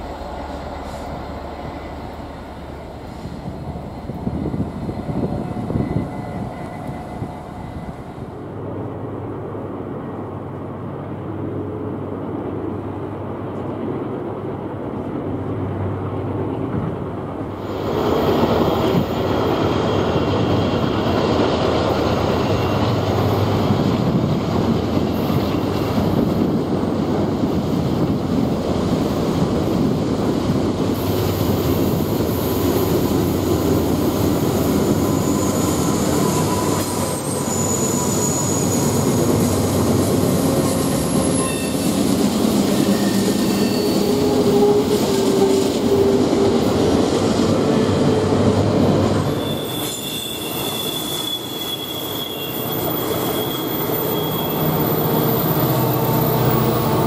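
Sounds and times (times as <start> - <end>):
wheels squealing on rails: 0.0 - 8.4, 17.5 - 27.0, 30.9 - 57.0
freight train rumbling: 0.0 - 57.0.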